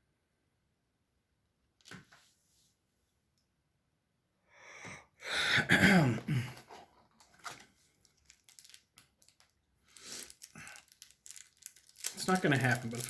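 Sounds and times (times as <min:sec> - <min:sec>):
person breathing in: 0:04.4 - 0:05.7, 0:09.9 - 0:10.9.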